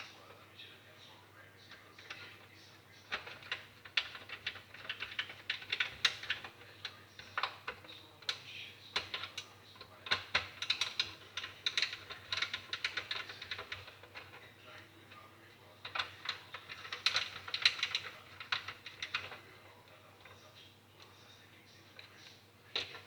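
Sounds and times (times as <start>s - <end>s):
hard parts clicking and tapping: 3.1s - 14.4s, 15.8s - 20.4s, 21.9s - 23.0s.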